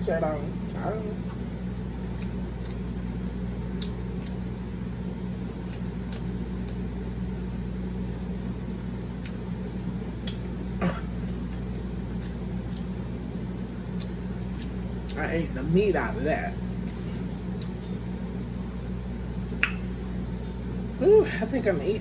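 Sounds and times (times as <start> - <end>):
fan hum: 0.0 - 22.0
chewing clicks and smacks: 1.3 - 7.2, 8.8 - 10.5, 11.3 - 13.2, 13.9 - 15.2, 17.5 - 18.0.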